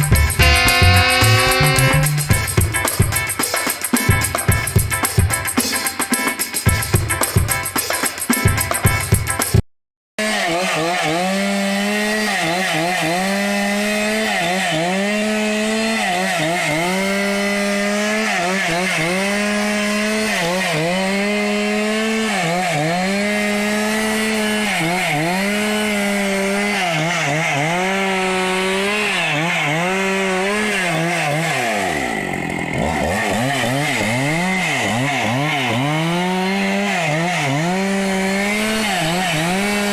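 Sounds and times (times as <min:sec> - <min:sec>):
chainsaw cutting wood: 0:00.0 - 0:02.7, 0:10.2 - 0:39.9.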